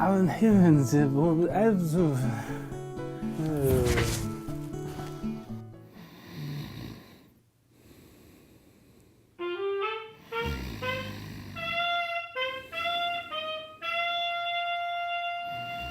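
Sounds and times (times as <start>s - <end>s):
wind instrument melody: 9.4s - 15.9s.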